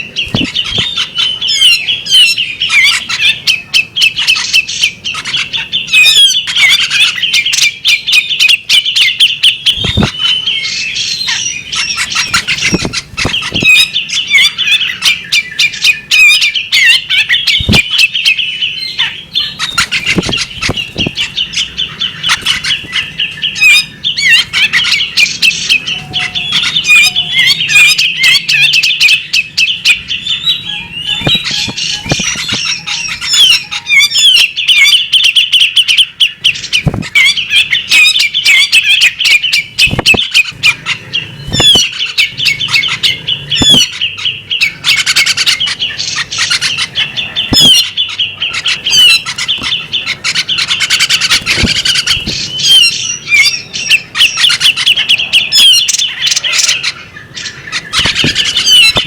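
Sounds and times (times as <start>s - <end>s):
bird singing chattering song: 0.0s - 59.0s.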